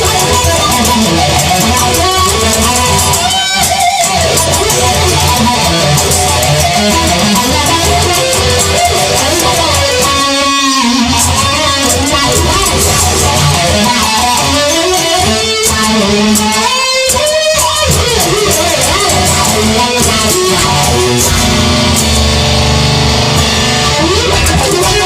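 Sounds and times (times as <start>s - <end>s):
guitar lead with bending notes: 0.0s - 25.0s
low accompaniment: 18.0s - 25.0s.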